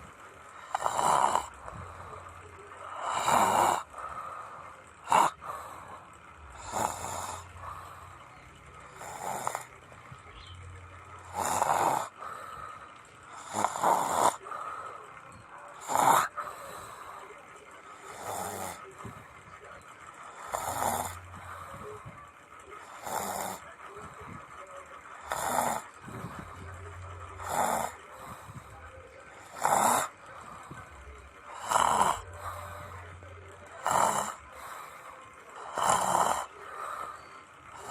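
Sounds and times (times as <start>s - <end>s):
person snoring: 0.6s - 2.2s, 2.8s - 8.1s, 8.9s - 9.7s, 11.2s - 12.6s, 13.3s - 15.0s, 15.8s - 17.2s, 18.0s - 19.0s, 20.3s - 22.0s, 22.8s - 23.6s, 25.2s - 26.7s, 27.4s - 28.7s, 29.4s - 30.8s, 31.5s - 33.1s, 33.8s - 35.0s, 35.6s - 37.9s.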